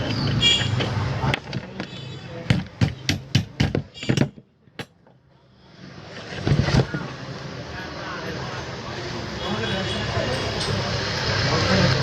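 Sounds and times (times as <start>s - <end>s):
sharp knocks on fan parts: 2.4s - 5.0s.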